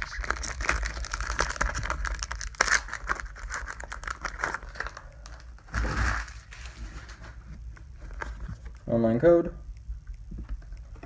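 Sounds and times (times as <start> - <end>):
foil wrapper crinkling and tearing: 0.0 - 6.8.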